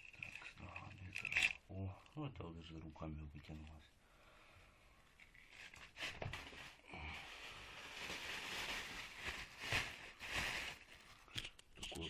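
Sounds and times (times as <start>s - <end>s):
wire rustling and scraping: 0.0s - 1.6s, 5.2s - 6.8s.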